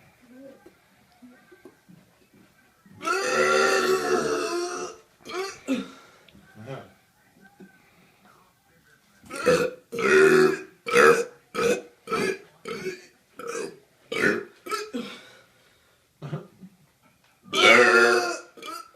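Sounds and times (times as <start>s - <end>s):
man burping: 9.3s - 15.0s, 16.2s - 16.5s, 17.5s - 18.9s.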